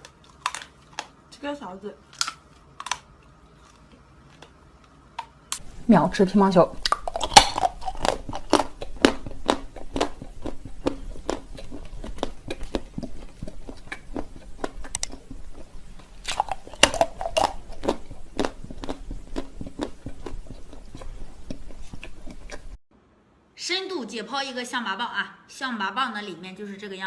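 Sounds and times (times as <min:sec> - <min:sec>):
crunchy biting and chewing: 0:00.0 - 0:01.3, 0:02.1 - 0:05.9, 0:06.7 - 0:22.8.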